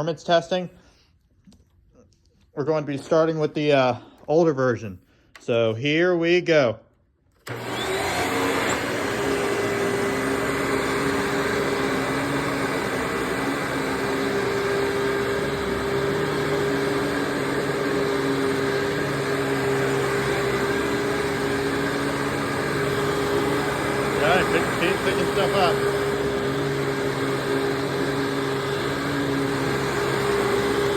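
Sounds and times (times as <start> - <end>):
vacuum cleaner running: 7.4 - 30.9.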